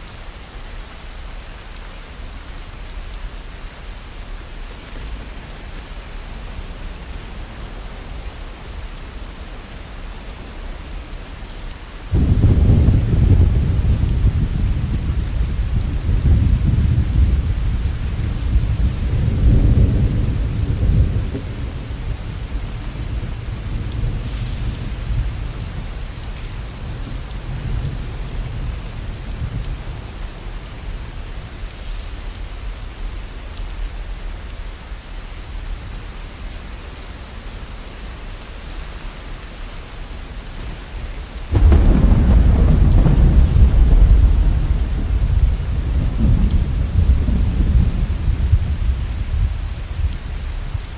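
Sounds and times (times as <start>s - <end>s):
heavy rain: 0.0s - 50.9s
rolling thunder: 12.1s - 30.6s, 41.5s - 50.8s.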